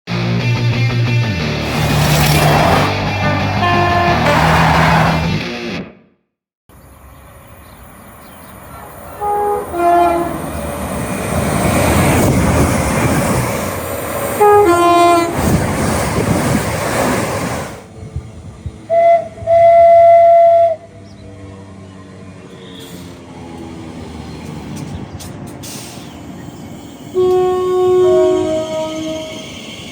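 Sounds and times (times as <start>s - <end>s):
rush of passing train: 1.4s - 5.4s, 6.8s - 29.9s
single-note train horn blast: 3.0s - 5.2s, 9.2s - 10.4s, 14.4s - 15.4s, 27.2s - 29.6s
two-tone train horn: 3.2s - 5.2s, 8.8s - 10.6s, 14.4s - 15.4s, 18.9s - 21.0s, 22.5s - 23.1s, 27.1s - 29.9s.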